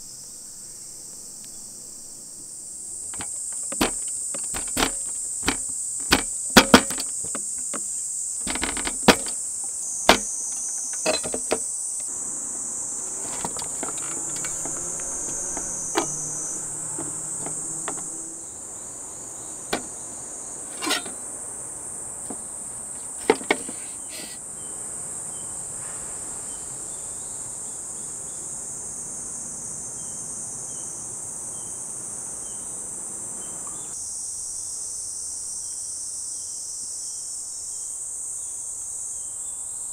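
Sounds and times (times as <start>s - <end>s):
high-pitched insect chorus: 0.0s - 39.9s
sharp knocks and taps: 3.1s - 9.4s.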